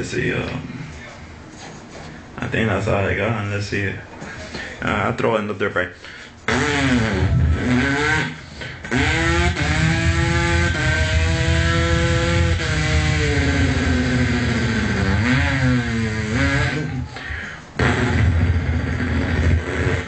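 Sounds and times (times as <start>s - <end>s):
voice imitating dirt bike engine: 6.5s - 20.0s.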